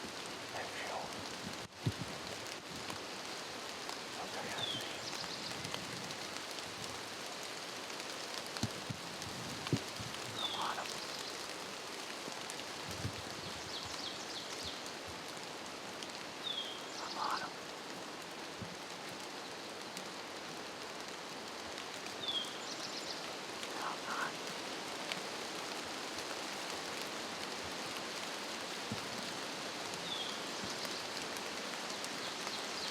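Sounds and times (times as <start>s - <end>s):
rain patter: 0.0s - 32.9s
bird call: 10.4s - 11.2s, 16.6s - 17.6s.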